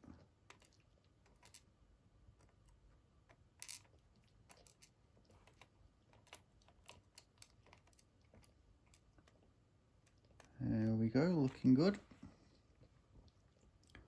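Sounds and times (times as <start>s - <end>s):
small metal parts clicking: 0.5s - 1.6s, 3.6s - 3.9s.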